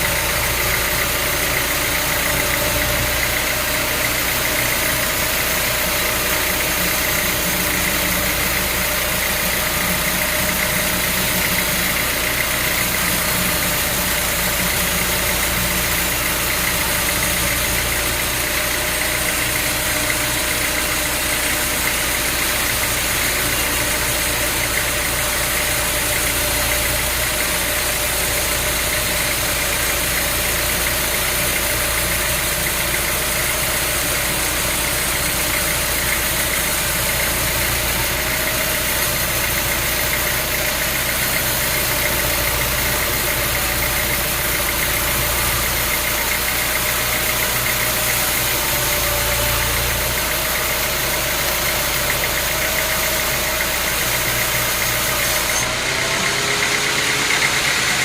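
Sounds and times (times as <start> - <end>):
sawmill machinery droning: 0.0 - 58.0.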